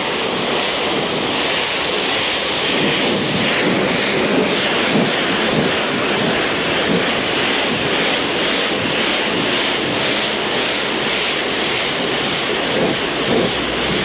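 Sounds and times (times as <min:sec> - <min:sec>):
pressure washer spraying: 0:11.6 - 0:14.0.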